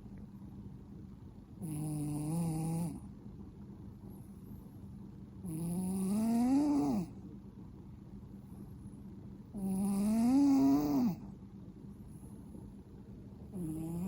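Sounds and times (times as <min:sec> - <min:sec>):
cat snoring loudly: 0:01.6 - 0:03.0, 0:05.4 - 0:07.2, 0:09.6 - 0:11.2, 0:13.5 - 0:14.0.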